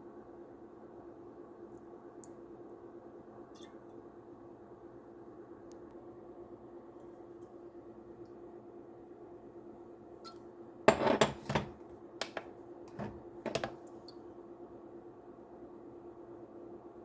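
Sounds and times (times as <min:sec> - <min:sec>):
faint steady hum: 0:00.0 - 0:17.0
dishes and utensils clattering: 0:10.9 - 0:11.8.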